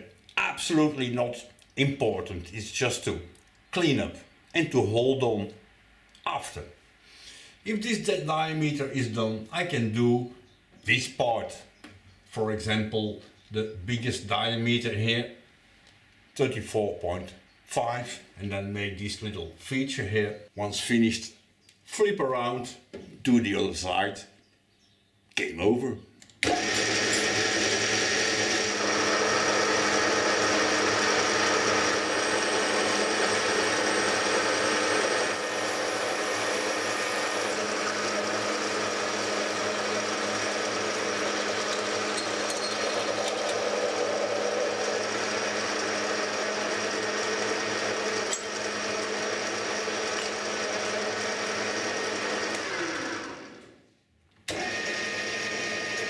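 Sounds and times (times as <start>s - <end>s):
metal lathe motor and gear whine: 26.4s - 53.7s, 54.5s - 56.0s.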